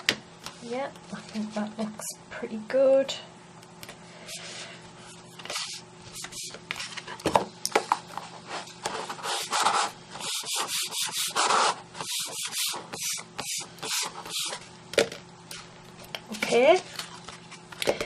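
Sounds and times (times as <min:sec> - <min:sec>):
rubbing strokes on cardstock: 0:08.5 - 0:14.6.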